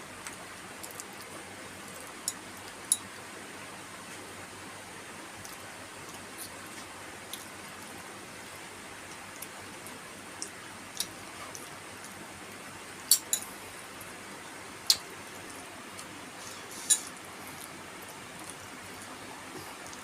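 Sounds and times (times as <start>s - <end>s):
steady hiss: 13.0s - 17.9s
metal utensils clinking on dish: 16.8s - 17.1s.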